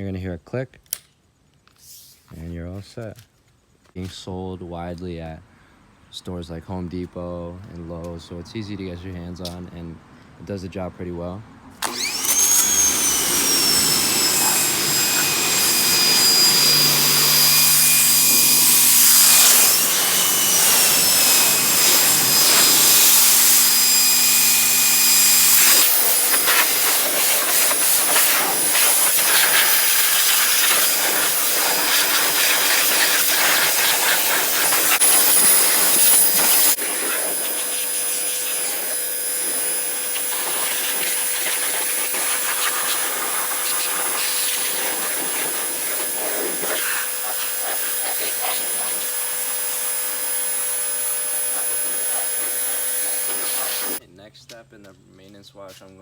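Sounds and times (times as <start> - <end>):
motor whine: 11.8 - 54.0
pressure washer spraying water: 11.8 - 54.0.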